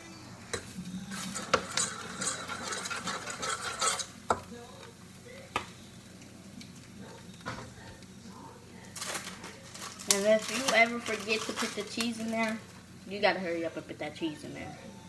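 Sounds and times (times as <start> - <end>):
eggs stirred in a pan: 0.0 - 15.0
utensil tapping on pan: 1.4 - 5.9.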